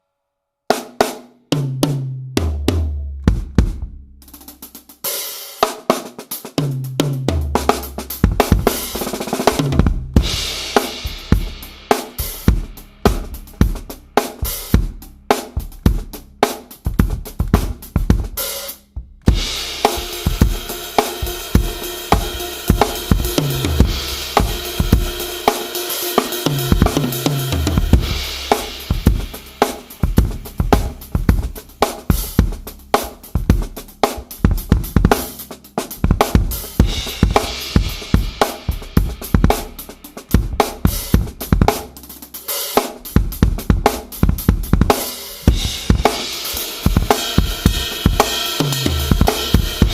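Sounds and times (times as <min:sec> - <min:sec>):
drum kit playing grooves: 0:00.7 - 0:49.9
cymbal wash: 0:19.3 - 0:34.1, 0:45.0 - 0:49.9.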